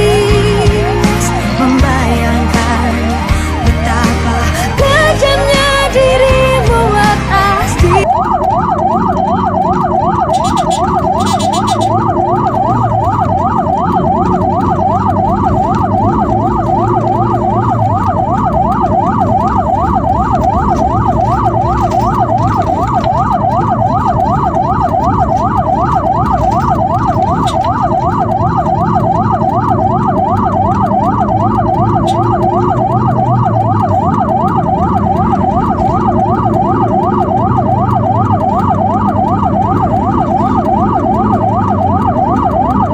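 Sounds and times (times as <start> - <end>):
ambulance siren yelping: 0.0 - 42.9
vehicle rumble: 0.0 - 42.9.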